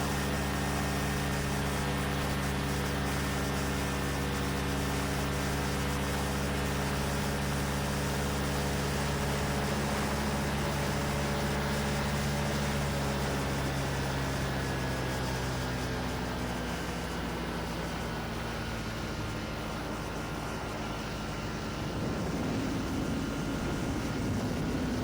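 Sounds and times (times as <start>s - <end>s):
ultralight engine and propeller: 0.0s - 25.0s
rushing air noise: 19.7s - 25.0s.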